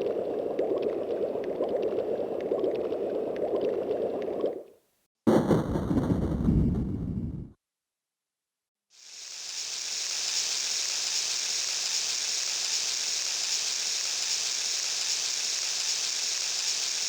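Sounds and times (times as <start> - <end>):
keyboard steady hiss: 9.0 - 17.0.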